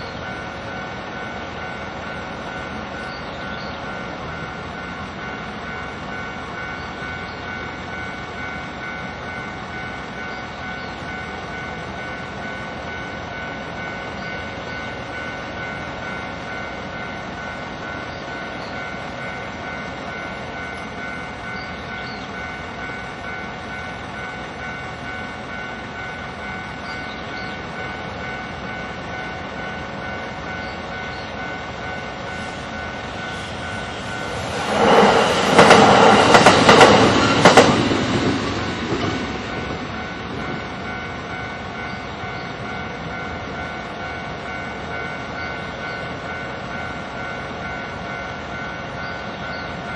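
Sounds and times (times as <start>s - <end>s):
level crossing warning bell: 0.0s - 34.9s, 35.6s - 49.9s
train rumble: 0.0s - 49.9s
road traffic hum: 28.9s - 42.5s.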